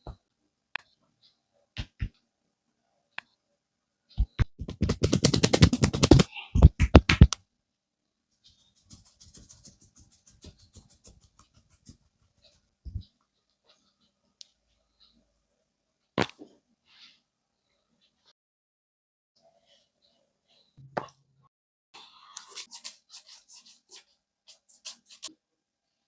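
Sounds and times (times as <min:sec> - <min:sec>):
rapid slaps on head: 0:04.3 - 0:07.4.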